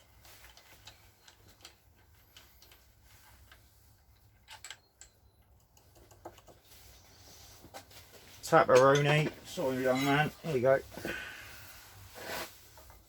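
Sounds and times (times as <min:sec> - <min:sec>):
clicks and metallic taps of tools: 0:08.7 - 0:10.3.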